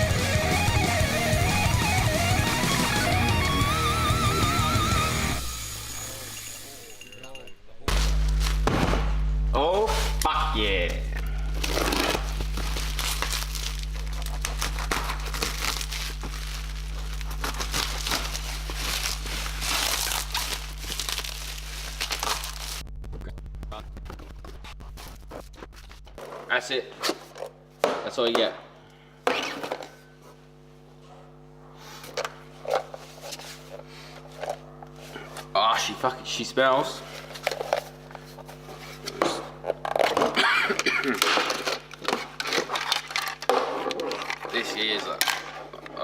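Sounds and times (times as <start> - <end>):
low electrical hum: 5.4 - 46.0
packaging crinkling and rustling: 11.4 - 22.8, 41.4 - 46.0.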